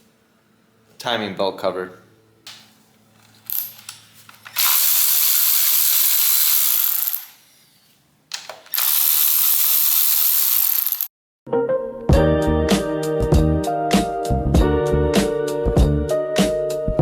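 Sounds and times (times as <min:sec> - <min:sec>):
ratchet wrench clicking: 0:03.5 - 0:07.4, 0:08.5 - 0:11.1.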